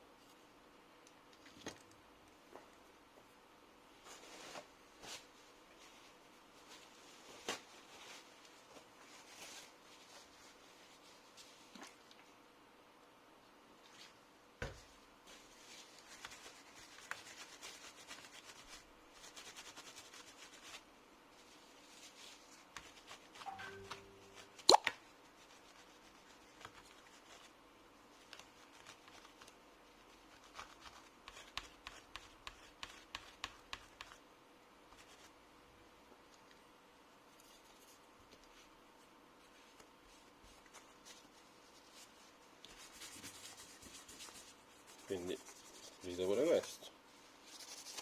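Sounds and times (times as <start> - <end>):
soft rubbing: 39.4 - 48.0.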